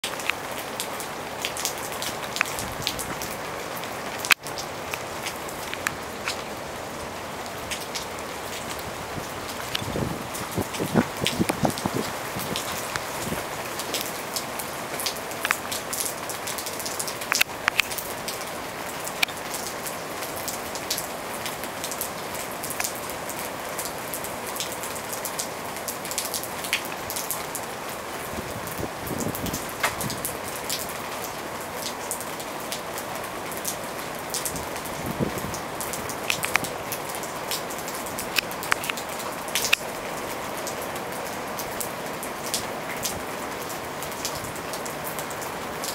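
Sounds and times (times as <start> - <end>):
heavy rain falling: 0.0 - 45.9
raindrops ticking close by: 0.0 - 45.9.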